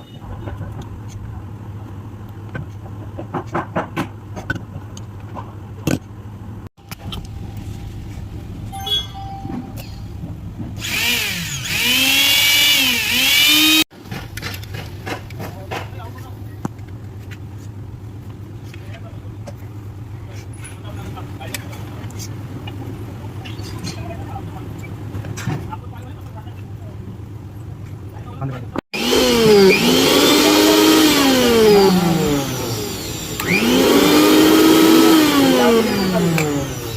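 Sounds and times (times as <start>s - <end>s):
mixer grinder motor whining: 10.8s - 13.8s, 29.0s - 36.9s.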